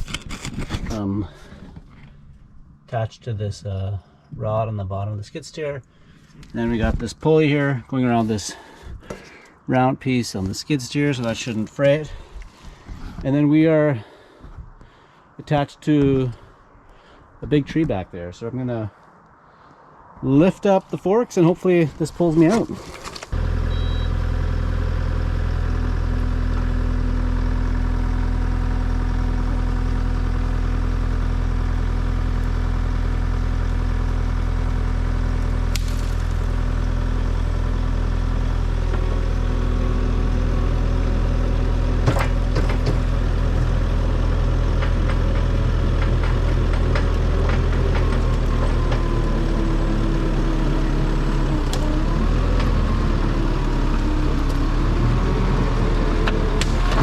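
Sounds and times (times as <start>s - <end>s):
skid steer engine running: 23.3s - 57.0s.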